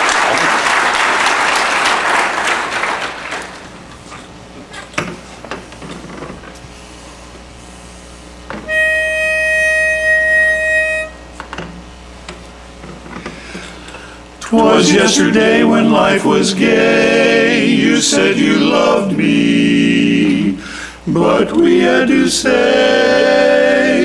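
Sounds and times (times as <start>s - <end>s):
audience applause: 0.0s - 3.9s
pitch pipe reed note: 8.7s - 11.4s.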